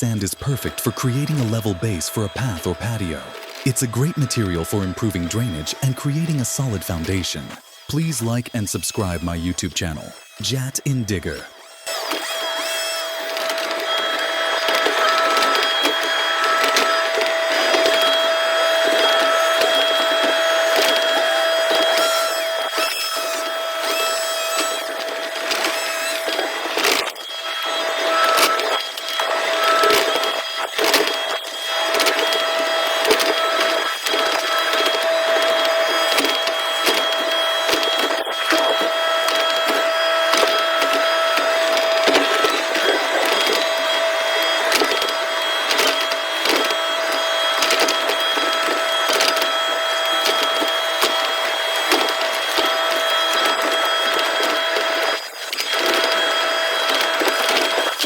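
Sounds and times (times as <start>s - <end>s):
digger engine and hydraulic whine: 0.0s - 58.0s.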